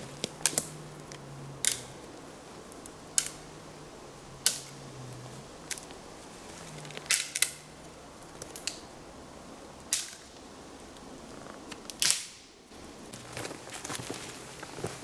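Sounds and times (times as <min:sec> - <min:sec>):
wood cracking: 0:00.0 - 0:01.9, 0:06.6 - 0:07.6.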